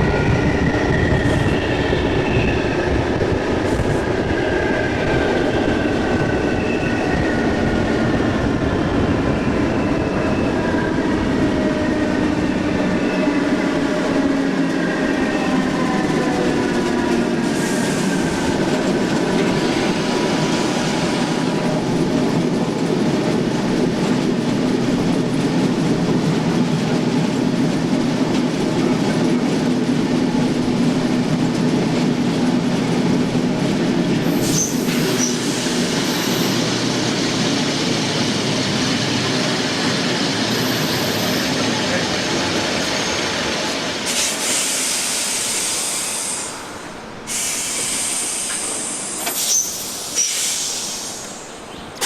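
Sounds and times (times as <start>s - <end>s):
train machinery humming: 0.0s - 52.0s.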